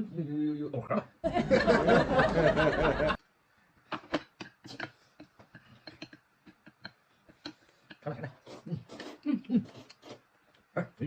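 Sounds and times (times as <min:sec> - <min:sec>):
people chewing: 0:03.9 - 0:10.7.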